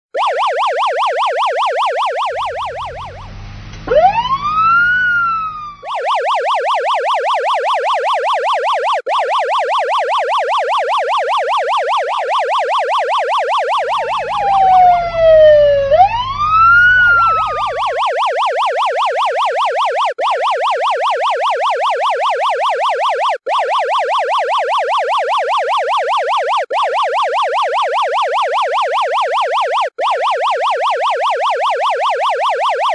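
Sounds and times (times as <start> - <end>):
police siren yelping: 0.2 - 32.9
low rumble: 13.9 - 18.0.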